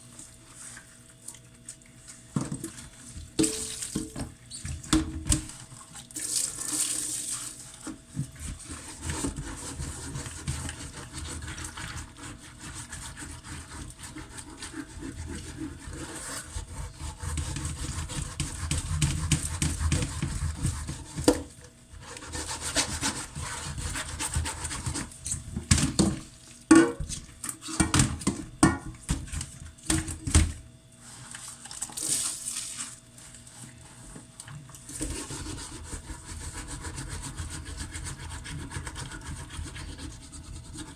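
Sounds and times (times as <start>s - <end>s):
scouring pad rubbing metal pot: 8.3s - 21.3s, 22.0s - 25.2s, 34.9s - 40.9s.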